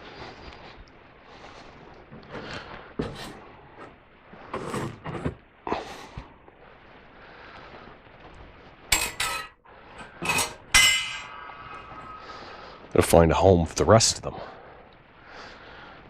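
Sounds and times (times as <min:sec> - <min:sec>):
steel blades knocking and rattling: 0:08.9 - 0:09.6, 0:10.2 - 0:11.4.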